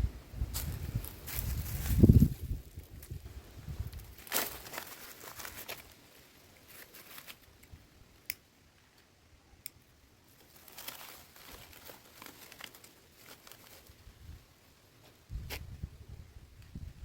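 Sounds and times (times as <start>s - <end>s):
faint crinkling and rustling: 0.5s - 7.8s, 10.3s - 15.7s.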